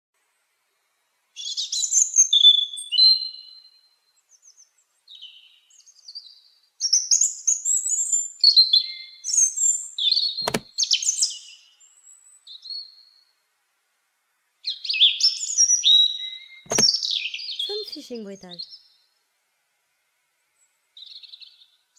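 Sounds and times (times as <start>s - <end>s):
sharp click: 10.4s - 10.7s, 16.7s - 16.9s.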